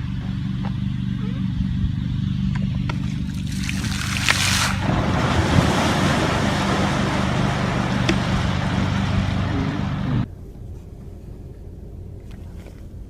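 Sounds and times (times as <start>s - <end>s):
boat motor running: 0.0s - 10.3s
wind: 0.0s - 13.0s
water noise: 2.7s - 10.3s.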